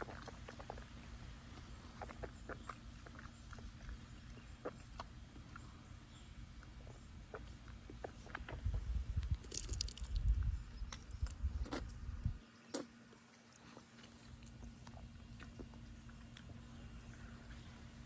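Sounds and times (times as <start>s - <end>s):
wet chewing mouth clicks: 0.0s - 5.8s, 6.6s - 10.3s, 13.5s - 16.6s.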